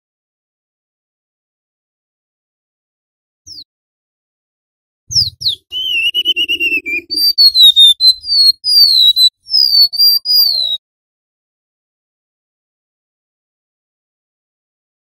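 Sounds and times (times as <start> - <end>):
bird singing whistled song: 3.5 - 3.7, 5.1 - 10.8.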